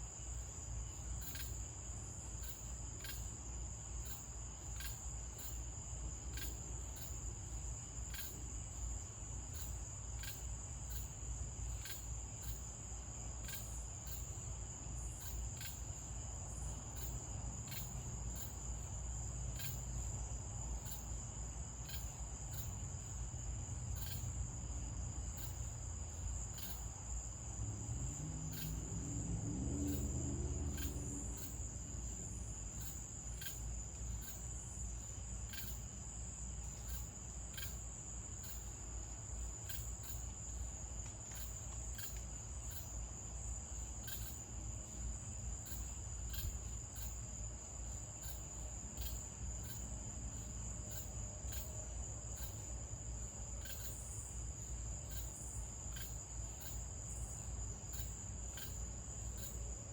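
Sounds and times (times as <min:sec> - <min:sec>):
crickets trilling: 0:00.0 - 0:59.9
faint low hum rising in pitch: 0:27.6 - 0:32.3.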